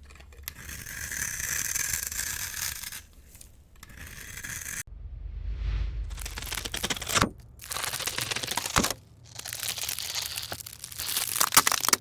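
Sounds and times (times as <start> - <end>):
dense crinkling and crackling: 6.2 - 12.0.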